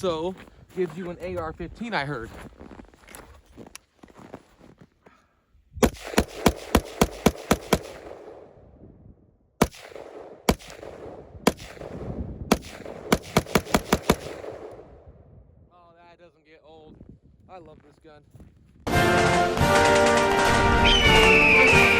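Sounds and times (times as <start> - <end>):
rifle shots echoing: 5.8 - 8.7, 9.6 - 15.2.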